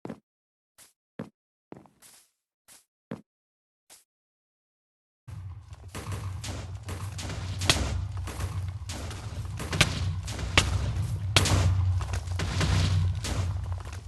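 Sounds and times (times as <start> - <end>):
wood crackling: 5.3 - 14.0.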